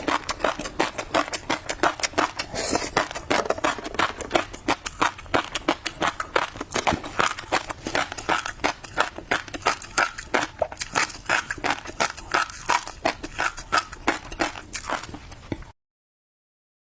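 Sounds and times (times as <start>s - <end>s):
chewing fish roe popping: 0.0s - 15.7s.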